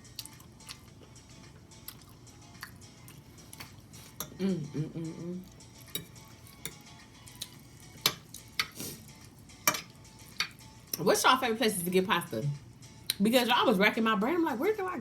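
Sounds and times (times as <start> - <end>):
fork scraping against a dish: 3.1 - 4.4, 5.6 - 10.6
person humming while eating: 4.0 - 8.0.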